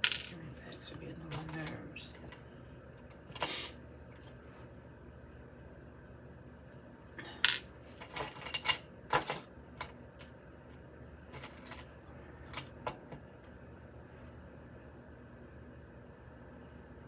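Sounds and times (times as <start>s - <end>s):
metal jewelry clinking: 1.3s - 2.4s, 8.0s - 9.5s, 11.3s - 12.8s.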